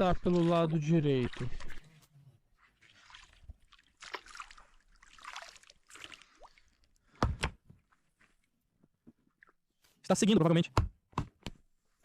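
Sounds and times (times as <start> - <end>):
oars sloshing in water: 0.0 - 7.2.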